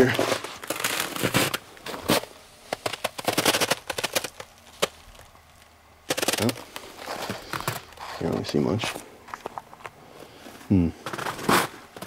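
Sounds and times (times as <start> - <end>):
footsteps crunching ice and snow: 0.0 - 9.9, 11.0 - 12.0.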